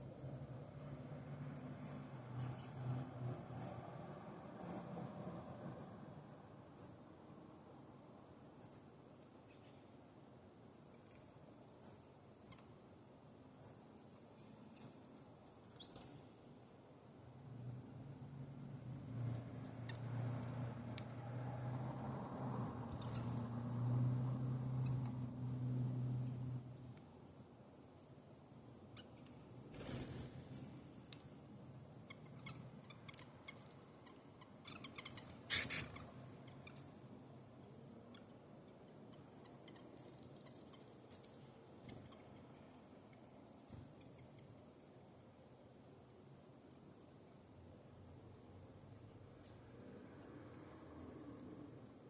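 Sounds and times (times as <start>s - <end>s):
small birds chirping: 0.0s - 1.1s, 1.8s - 3.9s, 4.6s - 4.9s, 6.7s - 7.1s, 8.6s - 10.0s, 10.9s - 12.8s, 13.6s - 16.3s, 18.6s - 21.2s, 22.9s - 23.6s, 28.5s - 44.7s, 50.4s - 51.6s.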